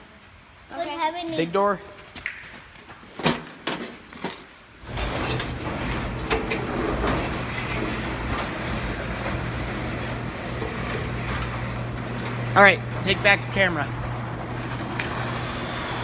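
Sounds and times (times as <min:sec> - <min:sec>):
garage door opener motor humming: 0:04.8 - 0:16.0
knocks and clicks: 0:04.9 - 0:15.6.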